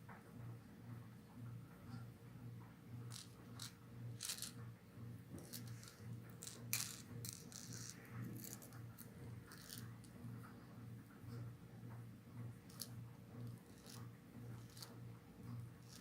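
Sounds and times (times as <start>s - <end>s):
faint low hum: 0.0s - 16.0s
plastic lures clicking and rattling: 3.1s - 4.6s, 5.4s - 8.8s, 9.5s - 9.9s.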